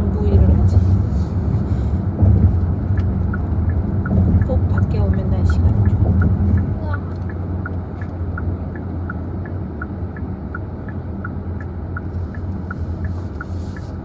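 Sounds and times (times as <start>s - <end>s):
car engine and road rumble: 0.0s - 14.0s
light ticking: 2.5s - 14.0s.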